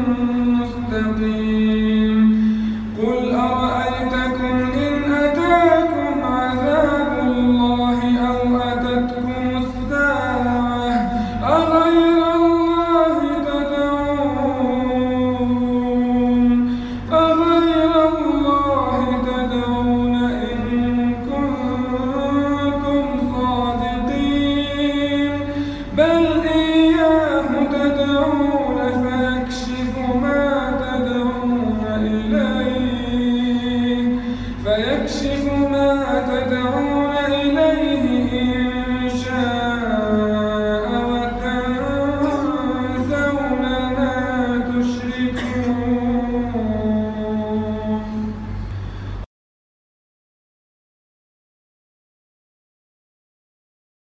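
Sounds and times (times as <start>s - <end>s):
man reciting melodically: 0.0s - 48.7s
steady low hum: 0.0s - 49.3s.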